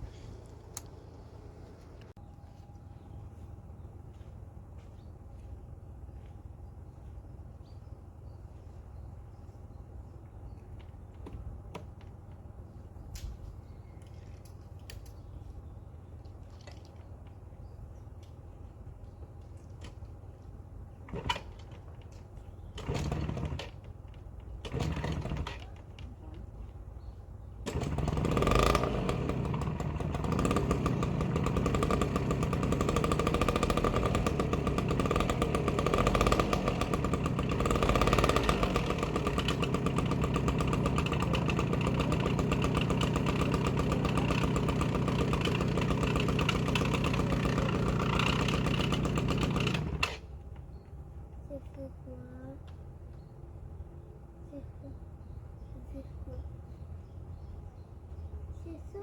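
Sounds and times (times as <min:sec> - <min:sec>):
scooter engine cranking: 0:21.1 - 0:26.5, 0:27.6 - 0:50.7
scooter engine running: 0:21.1 - 0:50.7.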